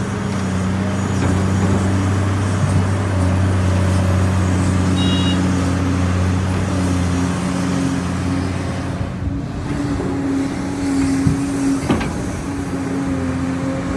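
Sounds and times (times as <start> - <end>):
bulldozer diesel engine running: 0.0 - 13.9
short clunks: 1.0 - 3.2, 9.4 - 13.2.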